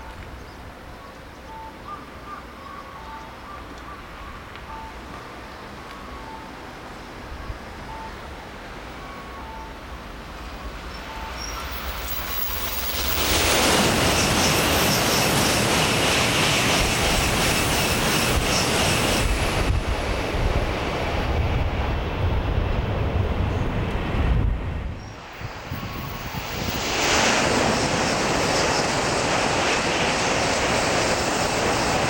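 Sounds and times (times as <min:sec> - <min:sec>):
train passing at high speed: 0:00.0 - 0:32.0
rush of air and wheel noise: 0:10.2 - 0:32.0.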